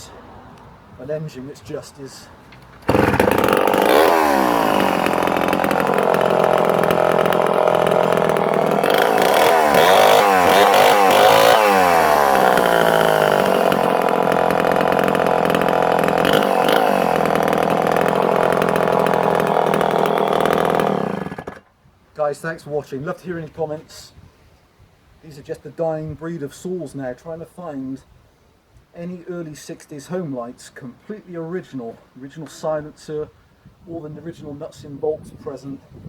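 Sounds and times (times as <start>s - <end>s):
chainsaw engine revving: 2.8s - 21.6s.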